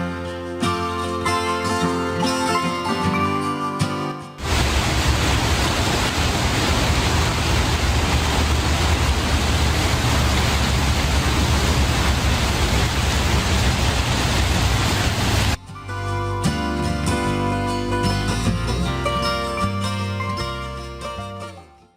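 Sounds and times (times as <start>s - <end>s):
waterfall roaring: 4.4s - 15.6s.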